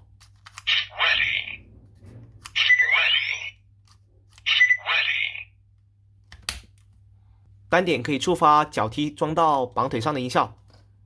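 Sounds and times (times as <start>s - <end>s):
electronic toy sound effects: 0.6s - 1.6s, 2.5s - 3.6s, 4.4s - 5.6s.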